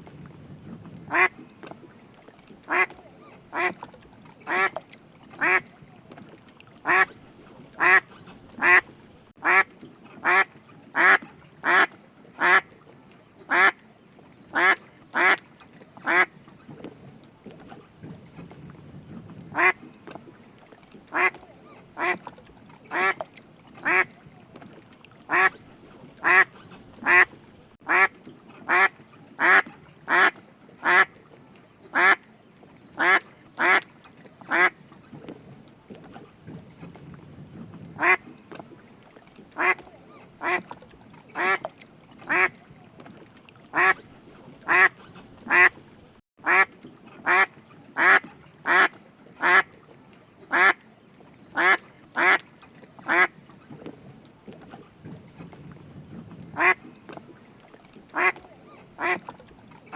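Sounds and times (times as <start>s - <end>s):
duck quacking: 1.1s - 1.4s, 2.7s - 3.8s, 4.5s - 4.8s, 5.4s - 5.6s, 6.8s - 7.1s, 7.8s - 12.6s, 13.5s - 13.8s, 14.6s - 15.4s, 16.0s - 16.3s, 19.5s - 19.8s, 21.1s - 21.4s, 22.0s - 22.2s, 22.9s - 23.2s, 23.8s - 24.1s, 25.3s - 25.6s, 26.2s - 28.1s, 28.7s - 31.1s, 33.0s - 33.8s, 34.5s - 34.7s, 38.0s - 38.2s, 39.6s - 39.8s, 40.4s - 40.6s, 41.4s - 41.6s, 42.3s - 42.5s, 43.7s - 44.0s, 44.7s - 45.8s, 46.4s - 49.7s, 51.6s - 52.4s, 56.6s - 56.8s, 58.2s - 58.4s, 59.0s - 59.2s.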